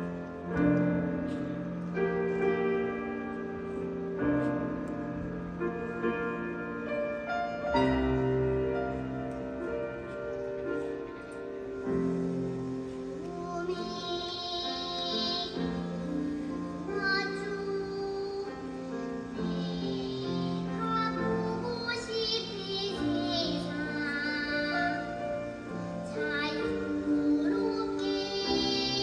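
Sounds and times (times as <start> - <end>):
children's choir singing: 10.8 - 29.0.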